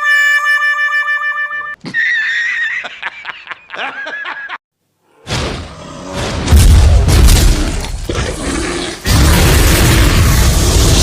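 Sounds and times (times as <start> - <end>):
rumbling boom: 6.2 - 8.0.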